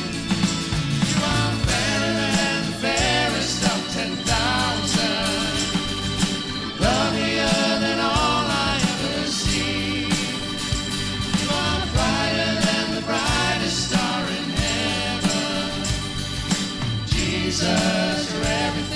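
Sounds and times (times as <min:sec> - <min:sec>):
drums: 0:00.0 - 0:18.9
worship song by band: 0:00.0 - 0:18.9
person singing: 0:01.1 - 0:05.8, 0:06.8 - 0:10.6, 0:11.4 - 0:16.1.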